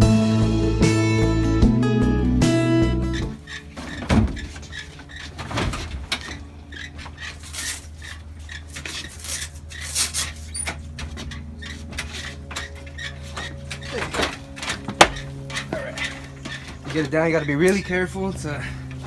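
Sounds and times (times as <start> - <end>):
low engine hum: 0.0 - 19.0
metal clanking and rattling: 3.1 - 19.0.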